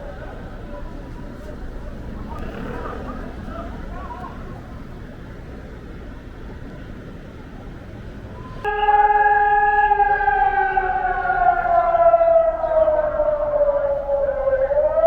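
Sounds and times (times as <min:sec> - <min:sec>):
street noise hum: 0:00.0 - 0:15.0
air-raid siren falling in pitch: 0:08.6 - 0:15.0.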